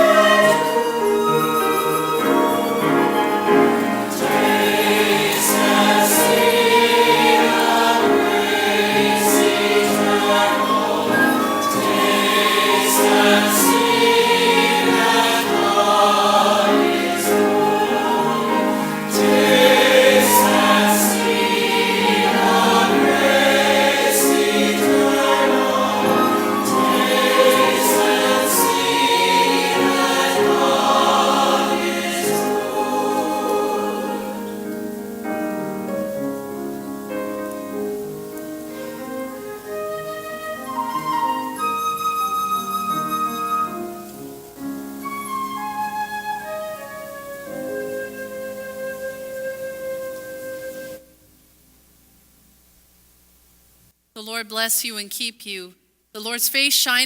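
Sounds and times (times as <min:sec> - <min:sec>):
choir singing: 0:00.0 - 0:35.9.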